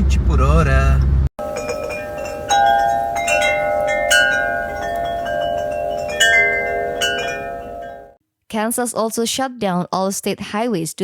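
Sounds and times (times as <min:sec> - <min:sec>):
wind chimes ringing: 0:01.4 - 0:08.2.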